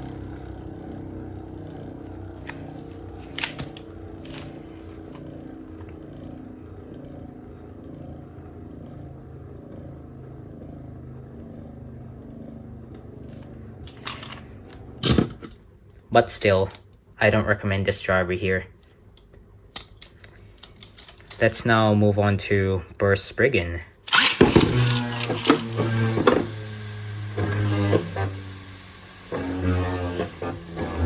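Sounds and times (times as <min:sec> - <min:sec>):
spinning top whirring: 0:24.1 - 0:31.0.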